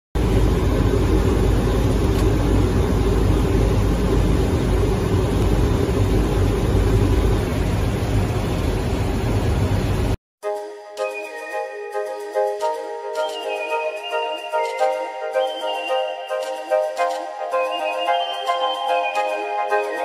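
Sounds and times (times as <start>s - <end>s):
low hum: 0.2s - 10.2s
vehicle engine rumbling: 0.2s - 10.2s.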